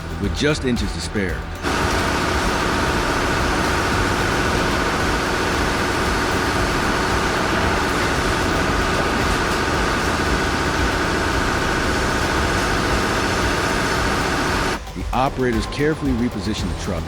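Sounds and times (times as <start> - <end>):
heavy vehicle engines running: 1.4 - 14.8.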